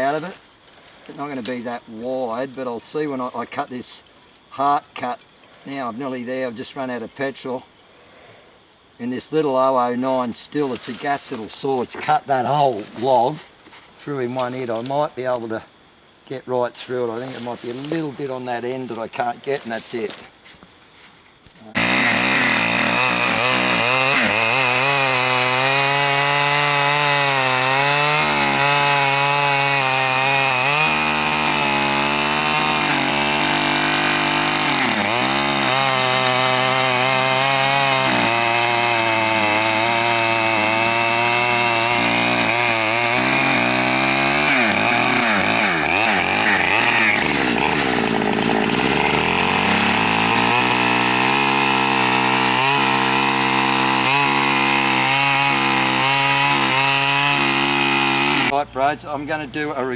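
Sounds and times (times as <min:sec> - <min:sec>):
chainsaw cutting through log: 0:21.7 - 0:58.6.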